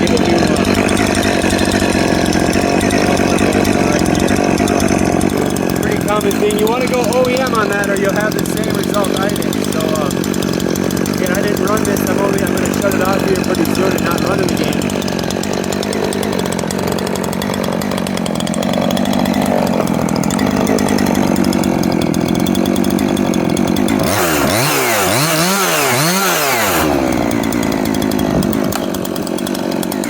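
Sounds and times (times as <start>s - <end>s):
chainsaw idling and revving: 0.0s - 30.0s.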